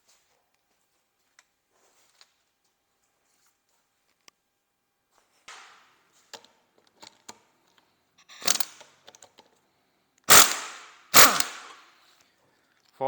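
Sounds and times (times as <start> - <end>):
metal tool clicks: 8.3 - 9.4, 11.2 - 11.8
sharp metal blows: 10.3 - 11.8.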